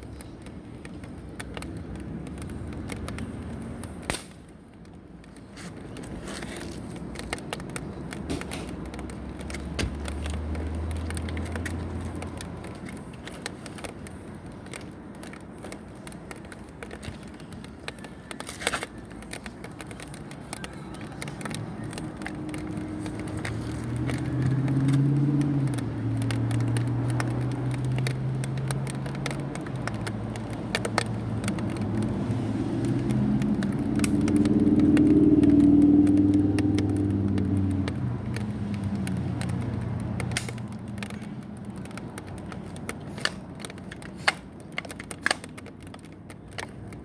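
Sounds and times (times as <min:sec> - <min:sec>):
crackling background: 0:00.0 - 0:47.0
air-gun shots: 0:04.1 - 0:04.4.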